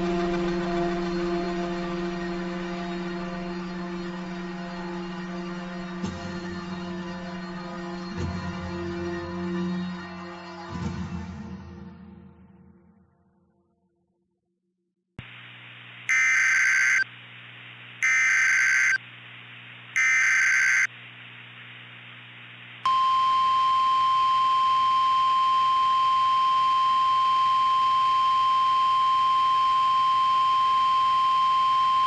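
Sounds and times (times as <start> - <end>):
piercing alarm tone: 16.1 - 17.1, 18.0 - 19.0, 20.0 - 20.9
warbling digital data tones: 16.1 - 17.1, 18.0 - 19.0, 20.0 - 20.9.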